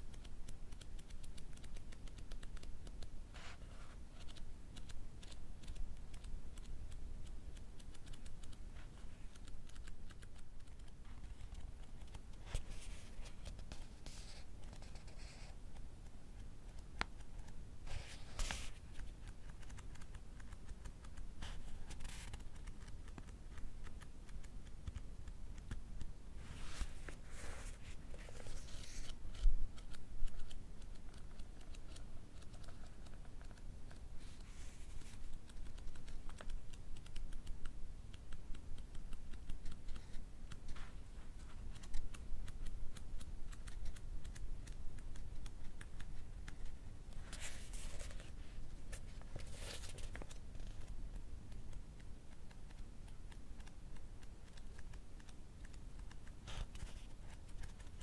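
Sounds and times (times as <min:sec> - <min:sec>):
book pages riffling: 0:26.4 - 0:30.5, 0:47.2 - 0:50.9.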